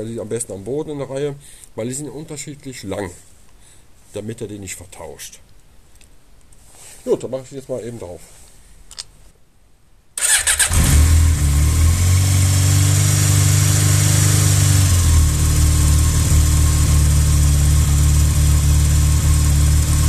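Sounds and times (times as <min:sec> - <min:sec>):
motorcycle engine starting: 0:10.2 - 0:20.0
motorcycle engine idling: 0:11.2 - 0:20.0.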